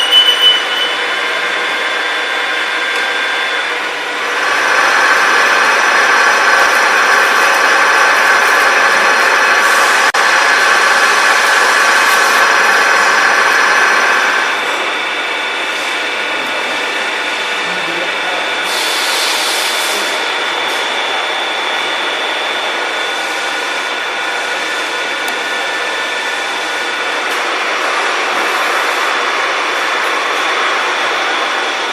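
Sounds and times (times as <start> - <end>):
drilling machine whining: 0.0 - 31.9.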